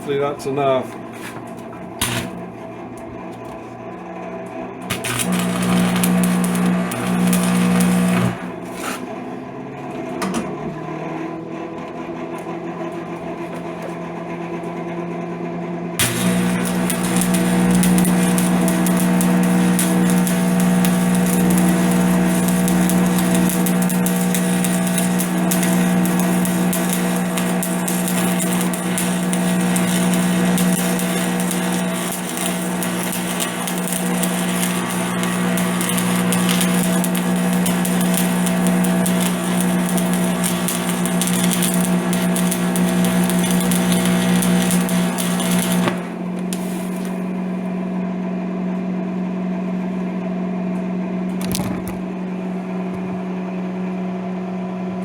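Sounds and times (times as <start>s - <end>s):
welding machine hum: 1.2s - 2.6s, 4.8s - 9.0s, 16.0s - 48.0s
welding arc crackling and sizzling: 2.0s - 2.4s, 4.8s - 8.8s, 16.0s - 47.7s.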